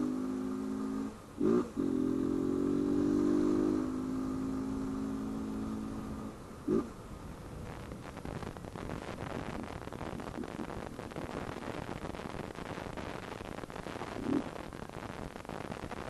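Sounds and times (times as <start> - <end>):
engine revving: 0.0 - 6.9.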